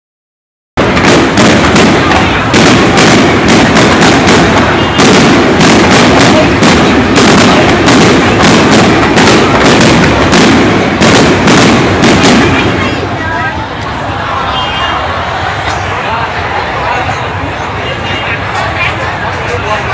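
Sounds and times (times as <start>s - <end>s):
fireworks bangs: 0.8s - 17.1s.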